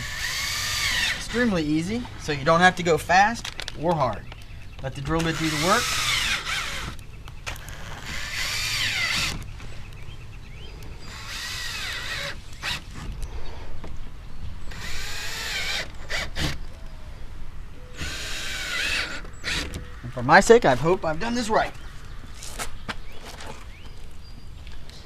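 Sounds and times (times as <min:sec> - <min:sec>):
electric drill boring through plastic: 0:00.0 - 0:01.4, 0:05.2 - 0:09.5, 0:11.0 - 0:13.1, 0:14.7 - 0:16.6, 0:18.0 - 0:19.8.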